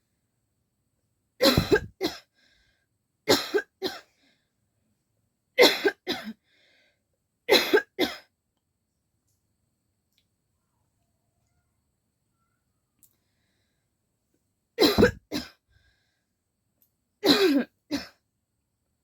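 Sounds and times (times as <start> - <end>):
person coughing: 1.4 - 2.2, 5.6 - 6.4, 14.8 - 15.5, 17.2 - 18.2.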